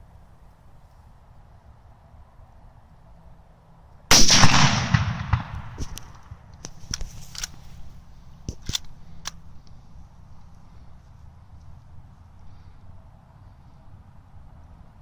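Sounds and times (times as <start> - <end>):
rifle gunshot: 4.1 - 6.4
sharp clicks: 8.4 - 9.8.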